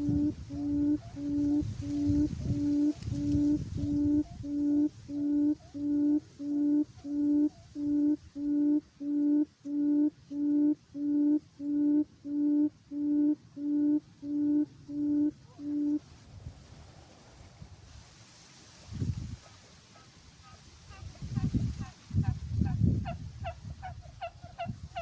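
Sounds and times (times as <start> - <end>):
bird low hooting call: 0.0 - 16.0.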